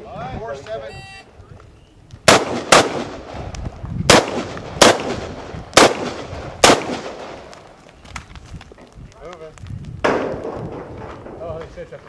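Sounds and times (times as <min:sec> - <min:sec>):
close gunshots with echo: 0:02.2 - 0:03.5, 0:04.1 - 0:07.5.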